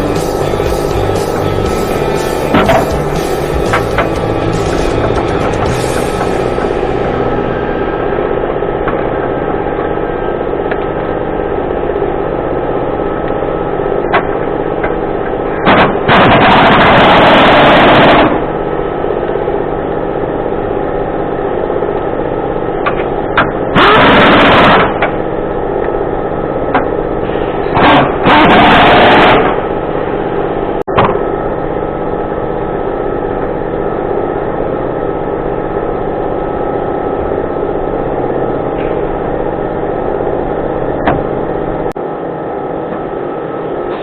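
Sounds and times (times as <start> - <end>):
air impact wrench hammering: 0.0 - 7.3, 15.6 - 18.5, 22.8 - 25.2, 27.6 - 29.6
steady mechanical hum: 0.0 - 44.0.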